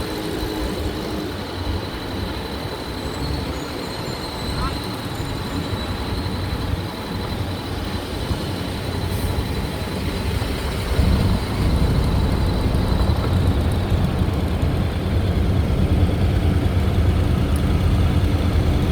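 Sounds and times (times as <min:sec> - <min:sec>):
vehicle engine rumbling: 0:04.4 - 0:18.9.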